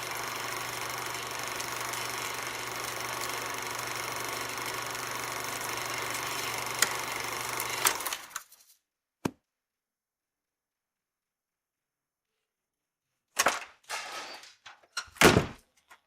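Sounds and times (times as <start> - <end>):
film projector whirring: 0.0 - 8.5.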